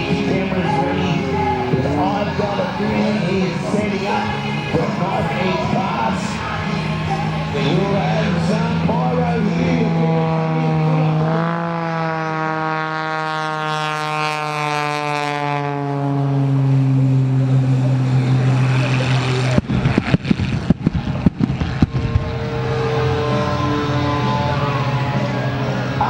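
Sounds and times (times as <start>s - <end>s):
biplane engine passing: 0.0s - 26.0s
pyrotechnic bangs: 19.1s - 23.2s.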